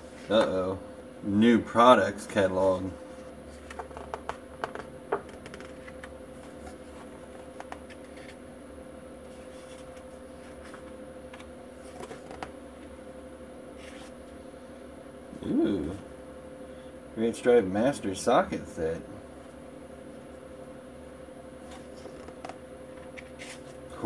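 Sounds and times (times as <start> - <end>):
steady background hum: 0.0 - 24.0
paper pages turning: 5.3 - 8.4, 9.3 - 12.5.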